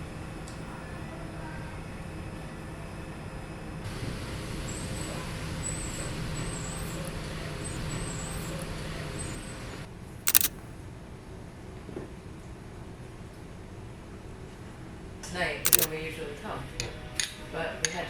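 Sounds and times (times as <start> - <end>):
city street traffic: 3.9 - 10.5
short sharp hiss: 10.3 - 10.5, 15.7 - 15.9.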